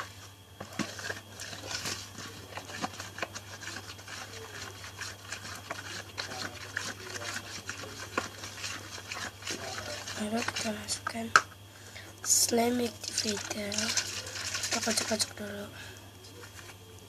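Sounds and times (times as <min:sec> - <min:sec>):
slime stirring scraping and clicking: 0:00.0 - 0:11.5, 0:12.2 - 0:15.6, 0:16.2 - 0:16.8.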